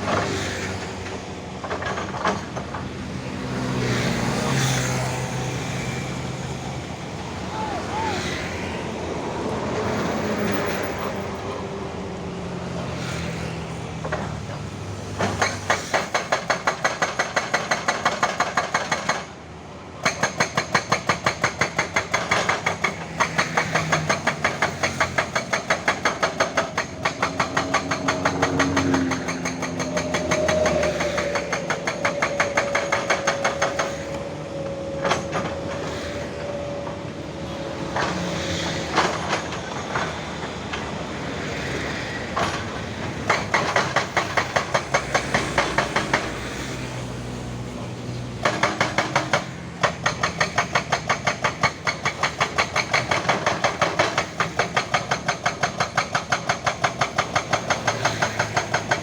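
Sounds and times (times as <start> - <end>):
hydraulic breaker pounding rock: 15.2 - 19.4, 20.0 - 34.2, 42.3 - 46.7, 48.4 - 59.0.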